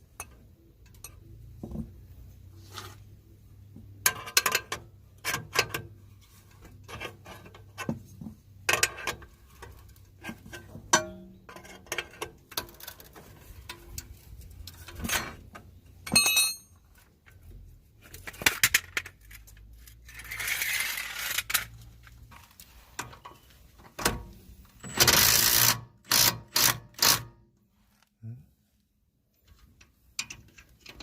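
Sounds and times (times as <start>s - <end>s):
metal parts clinking: 16.1s - 16.8s
metallic ring: 16.1s - 16.8s.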